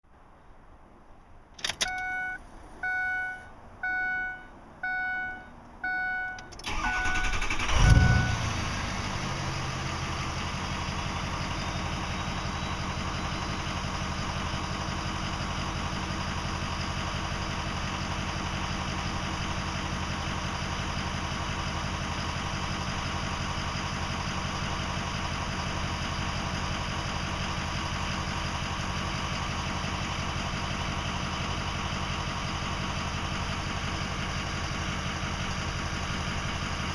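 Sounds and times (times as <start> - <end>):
diesel engine starting and idling: 1.6 - 36.9
dashboard warning chime: 1.8 - 8.4.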